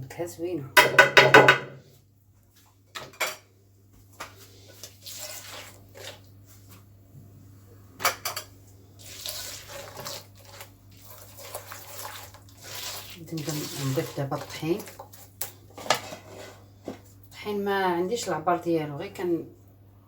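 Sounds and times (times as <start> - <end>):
wet swishing of batter stirred: 3.8 - 7.0, 8.6 - 17.4.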